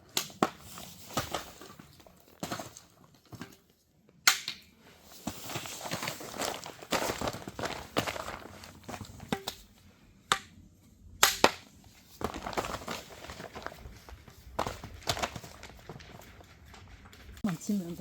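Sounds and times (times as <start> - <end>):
rustling handling: 4.8 - 9.8, 11.7 - 18.0
squash stems cracking: 11.2 - 13.0.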